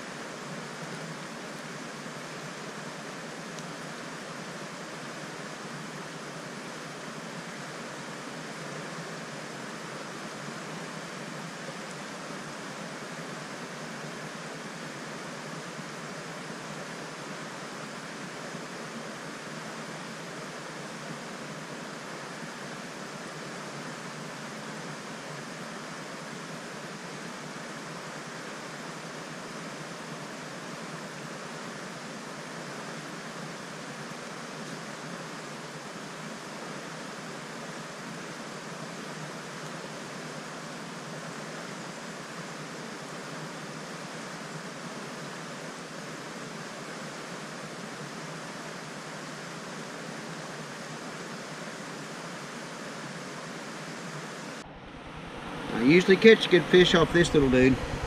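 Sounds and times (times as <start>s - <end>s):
river water rushing: 53.8s - 58.0s.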